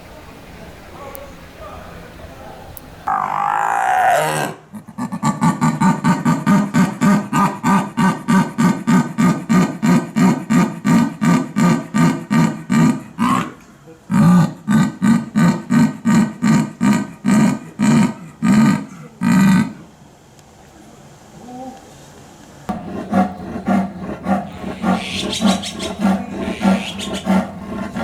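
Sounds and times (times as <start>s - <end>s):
big cat rasping grunts: 22.7s - 28.0s.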